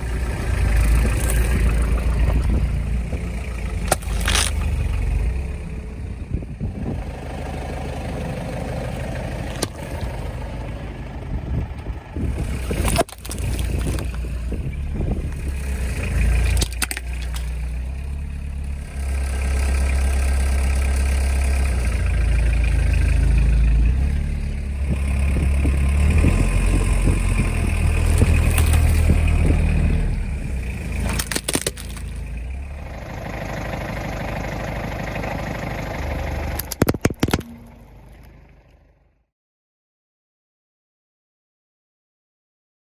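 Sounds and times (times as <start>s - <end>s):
objects cracking under tyres: 0.0s - 5.4s, 9.1s - 32.6s, 36.4s - 38.4s
car engine running slowly: 0.0s - 39.3s.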